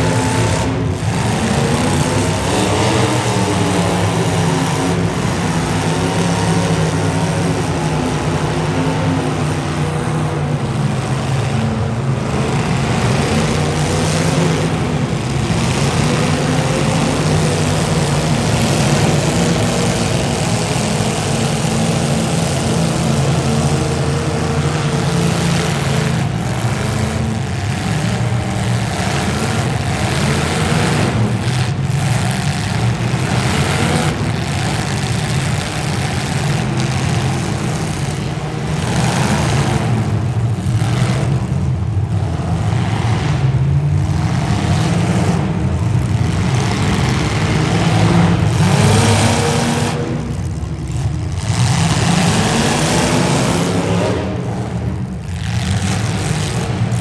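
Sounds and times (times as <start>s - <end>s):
car engines running loudly: 0.0s - 57.0s.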